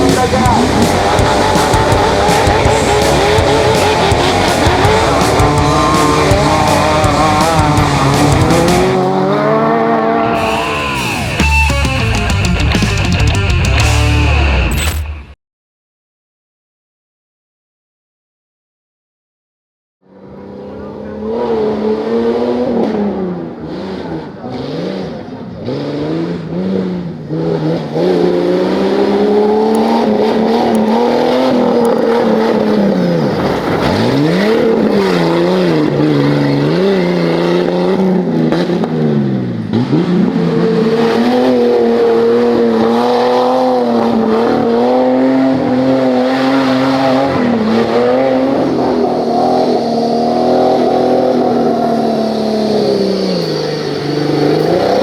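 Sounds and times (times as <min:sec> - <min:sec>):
engine revving hard: 0:00.0 - 0:15.0, 0:20.2 - 0:55.0.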